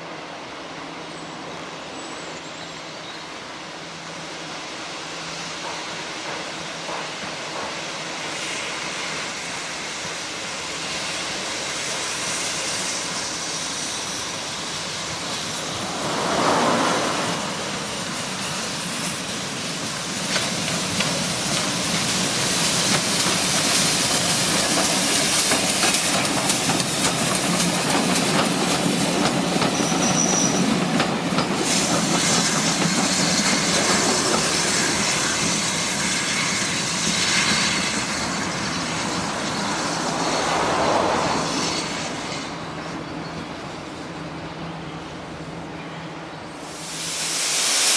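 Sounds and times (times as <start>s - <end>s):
wheels squealing on rail: 0.9s - 3.8s, 5.2s - 45.0s
steam hissing: 2.7s - 42.9s, 46.5s - 47.9s
train wheels clicking on rail joints: 5.4s - 10.2s, 11.3s - 42.9s.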